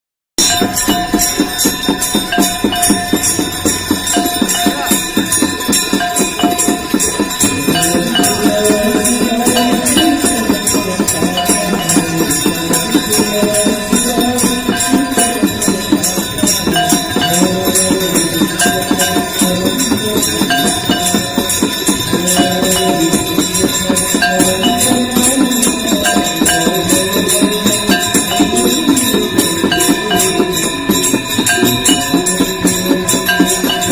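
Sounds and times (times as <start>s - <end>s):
hand bells ringing rapidly: 0.4s - 33.9s
person singing a devotional hymn: 7.5s - 33.9s.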